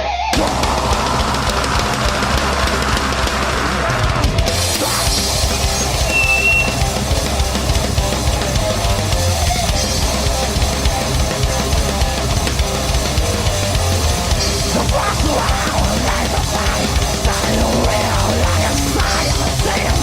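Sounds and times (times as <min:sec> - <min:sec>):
thrash metal band playing: 0:00.0 - 0:20.0.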